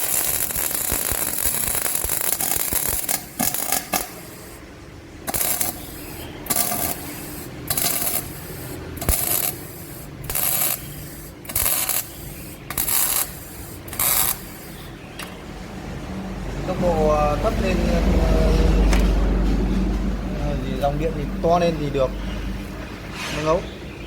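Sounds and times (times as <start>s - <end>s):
welding arc hissing and crackling: 0.0s - 14.9s.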